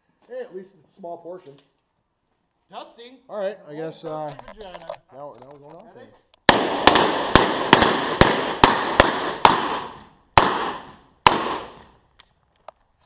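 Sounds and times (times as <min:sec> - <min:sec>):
revolver shots echoing: 0:06.5 - 0:11.9.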